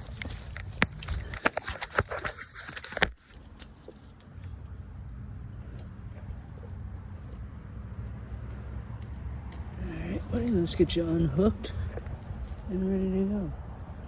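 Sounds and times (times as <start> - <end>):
crickets trilling: 0.0 - 14.0.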